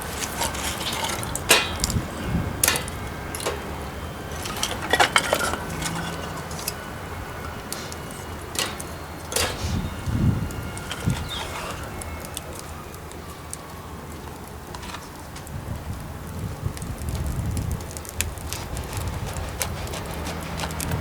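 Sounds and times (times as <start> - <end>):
metal camp gear clinking: 0.0 - 12.7.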